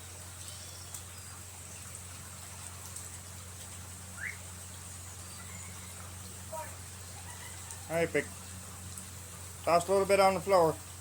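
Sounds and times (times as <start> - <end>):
rising bird chirp: 0.3 - 2.0, 4.1 - 6.4.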